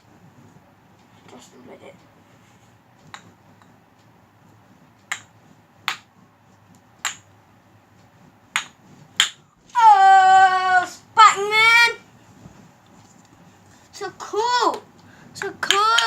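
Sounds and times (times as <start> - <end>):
wooden ball clacking on cups: 3.0 - 3.8, 5.0 - 6.2, 7.0 - 7.3, 8.6 - 9.4, 14.7 - 16.0.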